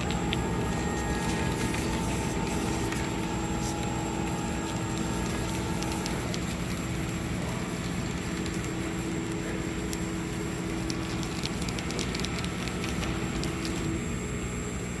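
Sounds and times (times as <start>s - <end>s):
faint high whine: 0.0s - 15.0s
laser cutter humming: 0.0s - 15.0s
light ticks and crackles: 3.7s - 13.8s.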